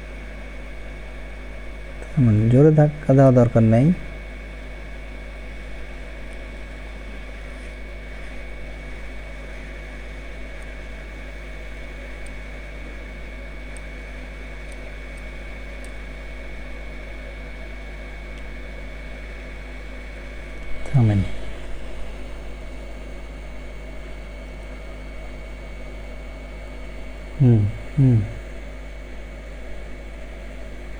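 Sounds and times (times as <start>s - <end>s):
low hum: 20.3s - 24.1s, 27.3s - 28.8s
thin high whine: 20.5s - 23.2s.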